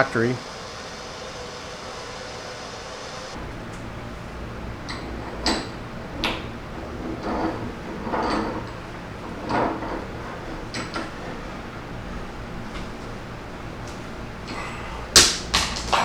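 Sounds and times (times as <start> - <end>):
metal scrapes: 3.3 - 12.6.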